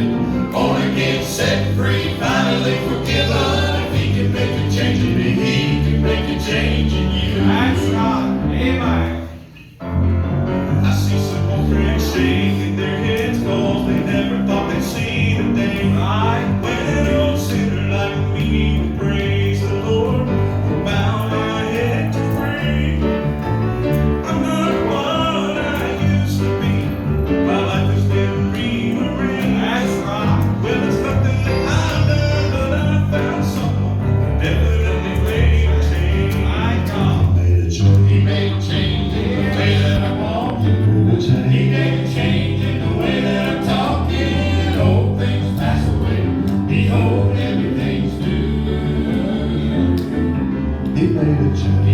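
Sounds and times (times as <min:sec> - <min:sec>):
gospel group singing: 0:00.0 - 0:09.5, 0:10.7 - 0:51.9
instrumental accompaniment with bass: 0:00.0 - 0:51.9.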